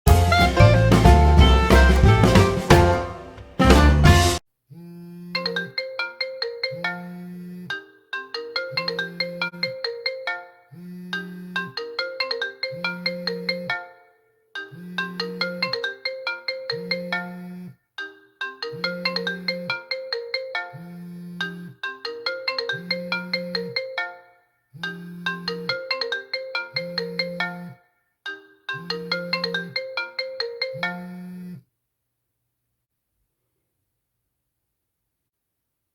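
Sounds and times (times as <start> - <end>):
marimba-like ringtone: 5.4 - 31.3.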